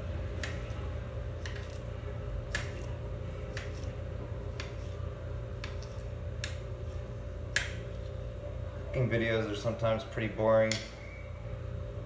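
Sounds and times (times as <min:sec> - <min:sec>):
steady low hum: 0:00.0 - 0:12.0
knife chopping on tile: 0:00.4 - 0:00.8, 0:01.4 - 0:01.8, 0:02.5 - 0:03.9, 0:04.5 - 0:05.0, 0:05.6 - 0:06.6.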